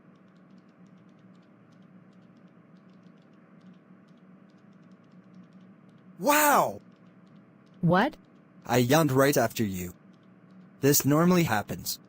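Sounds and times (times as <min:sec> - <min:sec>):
very light ticks: 0:00.0 - 0:06.2, 0:06.8 - 0:08.7, 0:09.9 - 0:11.4
low hum: 0:00.0 - 0:12.0.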